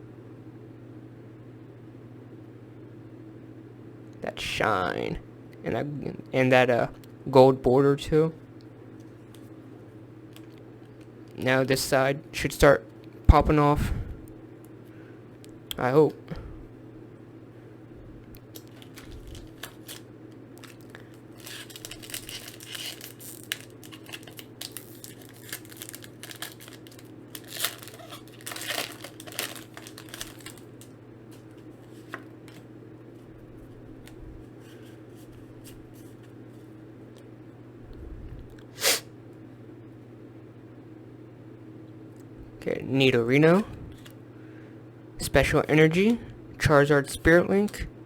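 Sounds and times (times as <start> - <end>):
low steady hum: 0.0 - 48.0
foil wrapper tearing and crinkling: 18.4 - 30.8.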